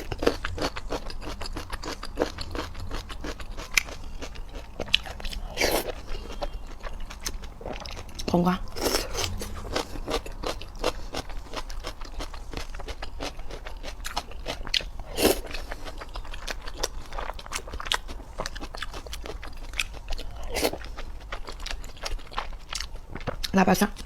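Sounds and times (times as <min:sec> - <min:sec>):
cucumber crunching while chewed: 0:00.0 - 0:23.6.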